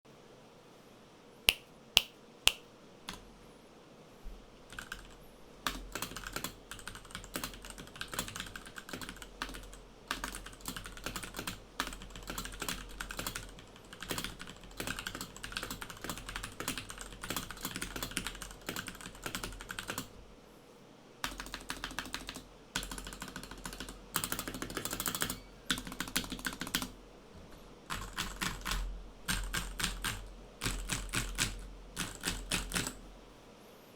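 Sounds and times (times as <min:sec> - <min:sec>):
mechanical keyboard typing: 0:04.7 - 0:20.1, 0:21.2 - 0:26.9, 0:27.9 - 0:33.0.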